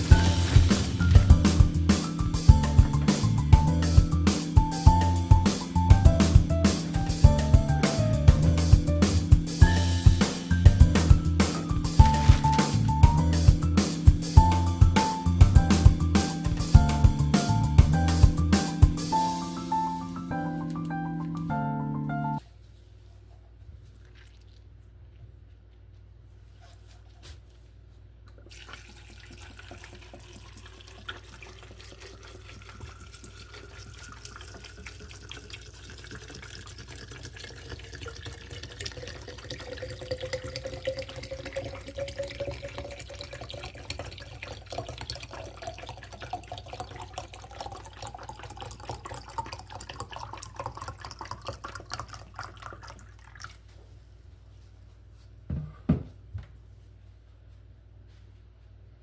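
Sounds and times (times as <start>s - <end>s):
liquid pouring into a container: 0.0s - 3.0s, 10.8s - 13.0s, 23.9s - 24.7s, 28.4s - 53.8s.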